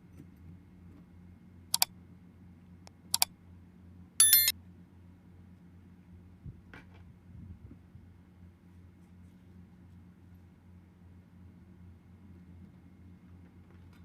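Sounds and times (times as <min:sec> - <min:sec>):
ringing clink: 0:04.2 - 0:04.5.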